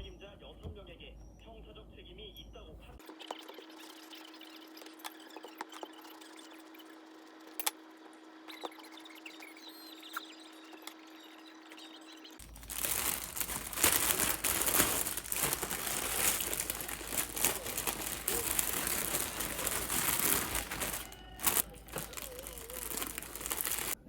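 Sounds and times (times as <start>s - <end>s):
crinkling and crackling material: 12.4s - 24.0s.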